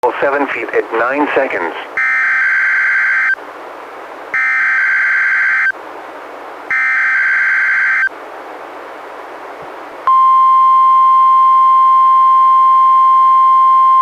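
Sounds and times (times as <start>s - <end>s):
radio hiss: 0.0s - 2.1s
buzzy warbling data tones: 4.4s - 5.7s, 6.7s - 8.1s.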